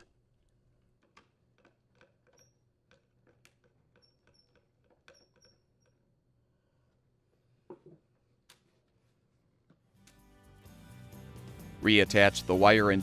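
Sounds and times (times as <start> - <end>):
screwdriver clicks and squeaks: 1.0 - 6.3.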